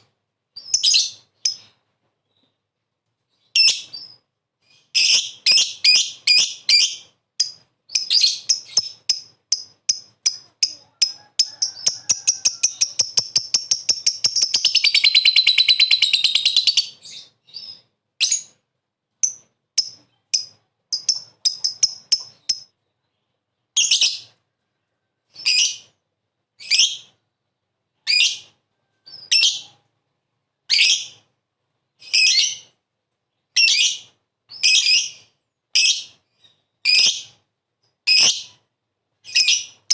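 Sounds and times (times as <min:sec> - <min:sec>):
lovebird chirping and trilling: 0:00.6 - 0:02.5, 0:03.3 - 0:18.6, 0:19.2 - 0:22.7, 0:23.8 - 0:24.4, 0:26.6 - 0:27.2, 0:28.1 - 0:29.8, 0:30.7 - 0:31.3, 0:32.0 - 0:32.8, 0:33.5 - 0:37.4, 0:38.1 - 0:38.6, 0:39.2 - 0:39.9.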